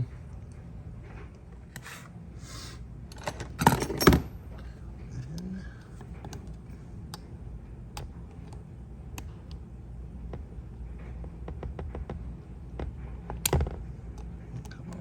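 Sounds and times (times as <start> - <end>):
metal parts and tools clinking: 3.2 - 4.3.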